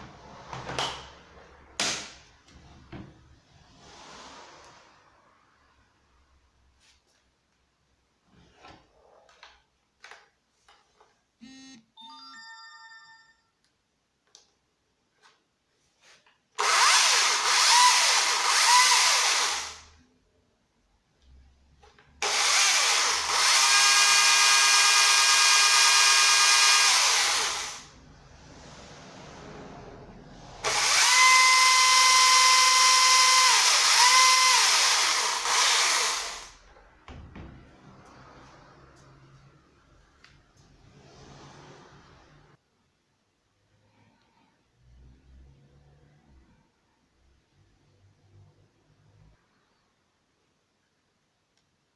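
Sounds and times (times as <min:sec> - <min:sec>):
short tone: 0:11.4 - 0:13.6
electric chainsaw whine: 0:22.2 - 0:27.9, 0:30.6 - 0:36.6.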